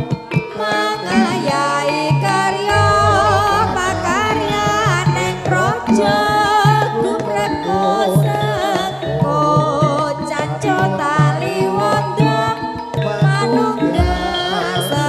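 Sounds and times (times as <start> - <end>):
person singing ornamented melody: 0.5 - 9.1, 10.4 - 15.0
hand drum strokes: 2.7 - 7.5, 14.0 - 14.7
struck metal tones: 2.7 - 7.5.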